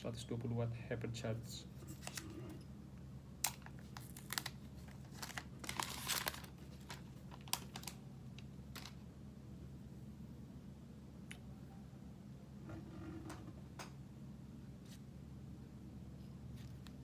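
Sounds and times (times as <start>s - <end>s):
plastic packaging crinkling: 3.4s - 9.0s.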